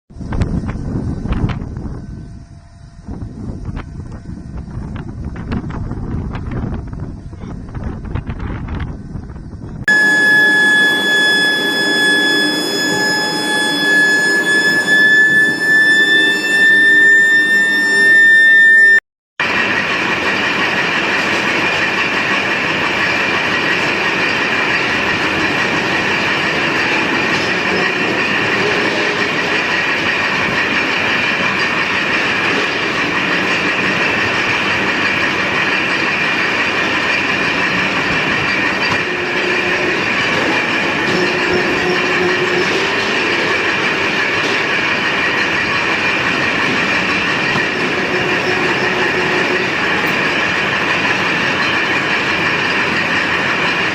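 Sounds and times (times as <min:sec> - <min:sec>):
industrial machinery noise: 0:00.1 - 0:53.9
high-pitched tones: 0:09.9 - 0:19.0.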